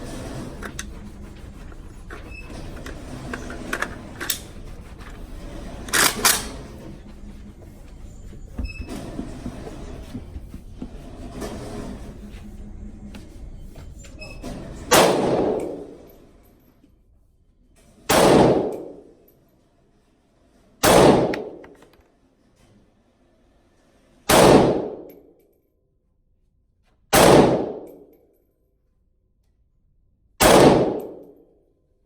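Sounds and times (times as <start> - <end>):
rifle gunshots ringing: 14.9 - 15.8, 18.1 - 19.0, 20.8 - 21.6, 24.3 - 25.1, 27.2 - 27.9, 30.4 - 31.2.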